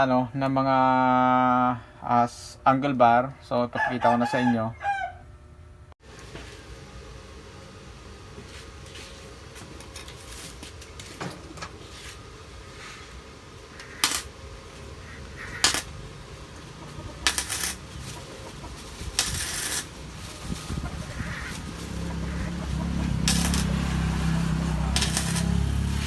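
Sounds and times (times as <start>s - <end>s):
steel bars clinking and clanking: 15.6s - 16.0s, 17.3s - 17.8s, 23.2s - 25.6s.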